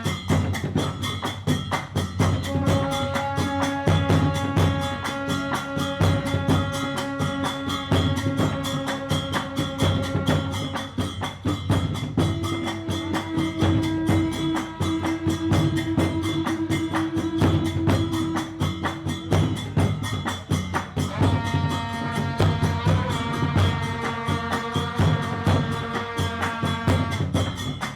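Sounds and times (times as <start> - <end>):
fast percussion beat: 0.0 - 27.9.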